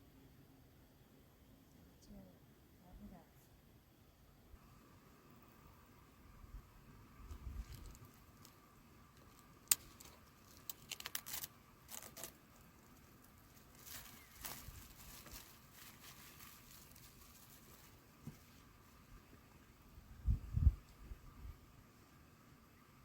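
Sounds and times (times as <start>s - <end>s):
light clicks and rustling: 9.2s - 18.6s.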